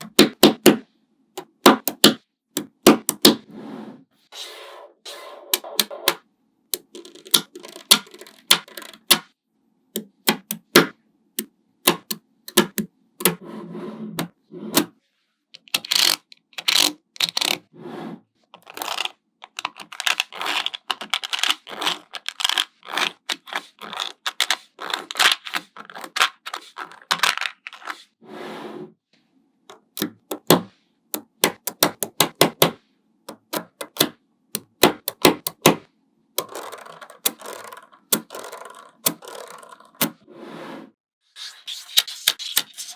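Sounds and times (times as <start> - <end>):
metal balls rattling: 6.8 - 9.1, 18.6 - 28.1, 36.4 - 40.2
magnetic balls clicking together: 6.8 - 9.3, 31.2 - 32.7, 33.3 - 35.8, 36.4 - 40.2.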